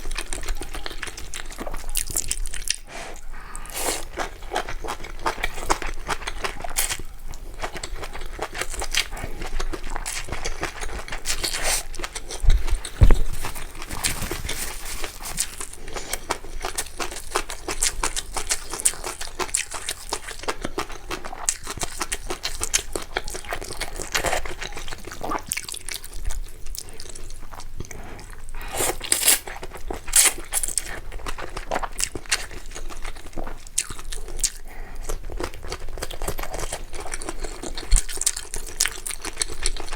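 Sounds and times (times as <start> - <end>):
chewing and slurping food: 0.0 - 39.9
heavy thump: 12.5 - 13.6.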